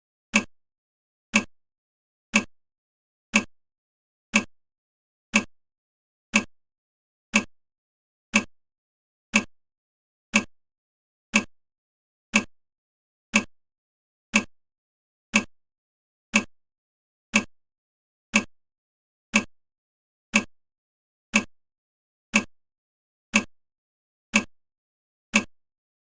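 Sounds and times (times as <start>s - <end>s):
clock ticking: 0.3s - 0.5s, 1.3s - 1.5s, 2.3s - 2.5s, 3.3s - 3.5s, 4.3s - 4.5s, 5.3s - 5.5s, 6.3s - 6.5s, 7.3s - 7.5s, 8.3s - 8.5s, 9.3s - 9.5s, 10.3s - 10.5s, 11.3s - 11.5s, 12.3s - 12.5s, 13.3s - 13.5s, 14.3s - 14.5s, 15.3s - 15.5s, 16.3s - 16.5s, 17.3s - 17.5s, 18.3s - 18.5s, 19.3s - 19.5s, 20.3s - 20.5s, 21.3s - 21.5s, 22.3s - 22.5s, 23.3s - 23.5s, 24.3s - 24.6s, 25.3s - 25.6s.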